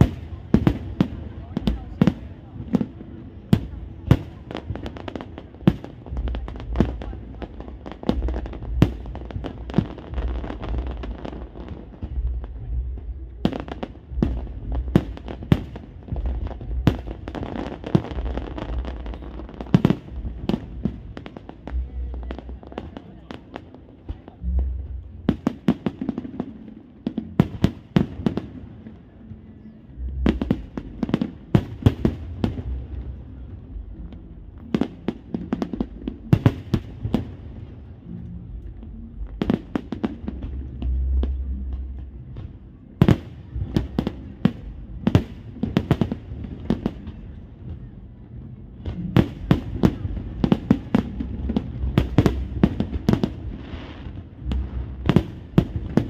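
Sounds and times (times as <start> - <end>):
fireworks deep booms: 0.0 - 23.5, 39.2 - 56.0.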